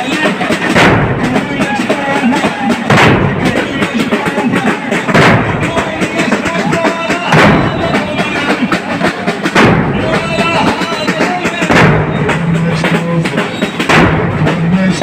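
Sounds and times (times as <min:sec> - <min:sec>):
voices chanting: 0:00.0 - 0:13.8
chest striking thuds: 0:02.9 - 0:03.4, 0:07.3 - 0:07.8.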